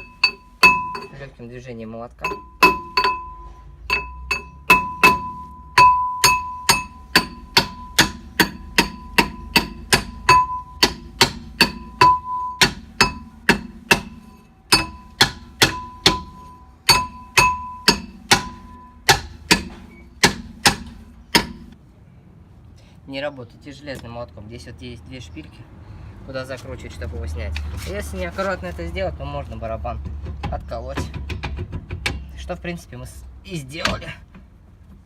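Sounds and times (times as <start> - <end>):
hammer striking metal drum: 0.0 - 1.2, 2.2 - 21.8.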